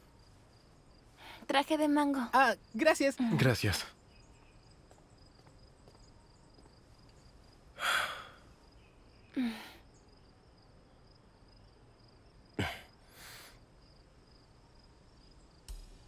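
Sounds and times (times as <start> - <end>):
crickets chirring: 0.0 - 16.0.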